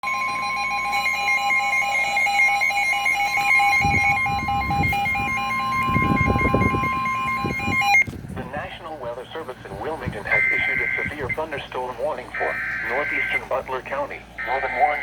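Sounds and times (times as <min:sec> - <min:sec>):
fast on-off beeping: 0:00.0 - 0:08.1
steady high alarm tone: 0:00.0 - 0:08.1, 0:10.2 - 0:11.6, 0:12.2 - 0:15.0
low muffled noise: 0:08.1 - 0:15.0.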